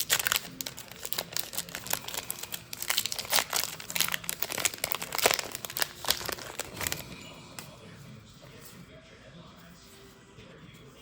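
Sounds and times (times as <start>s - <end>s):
plastic packaging crinkling: 0.0s - 7.6s.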